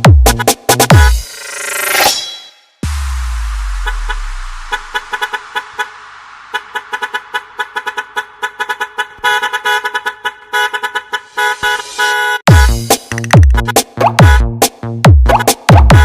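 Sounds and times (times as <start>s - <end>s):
electronic dance music: 0.0s - 8.6s, 11.1s - 16.0s
deep sub-bass boom: 2.8s - 5.1s
stuttering truck horn toots: 3.7s - 14.5s.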